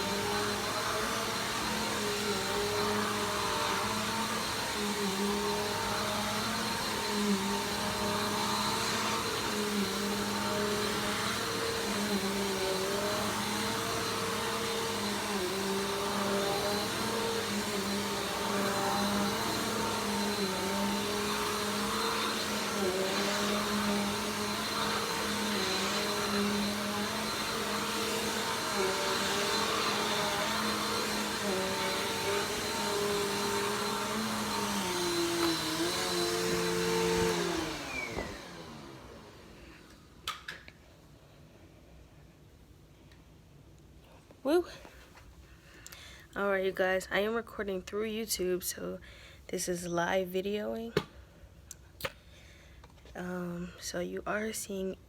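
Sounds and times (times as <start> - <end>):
vacuum motor winding down: 0.0 - 39.6
vacuum cleaner running: 0.0 - 40.7.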